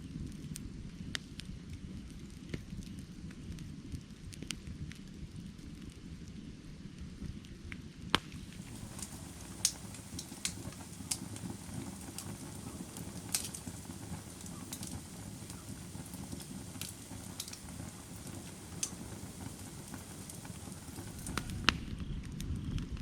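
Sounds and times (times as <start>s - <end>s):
fire rumbling: 0.0s - 23.0s
firewood crackling and popping: 0.0s - 23.0s.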